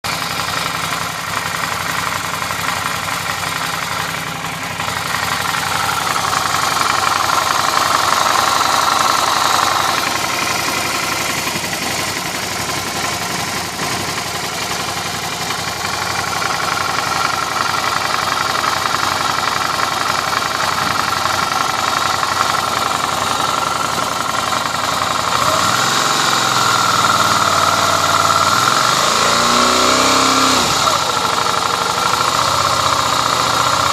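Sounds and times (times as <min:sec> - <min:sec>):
motorcycle engine idling and revving: 0:00.0 - 0:33.9.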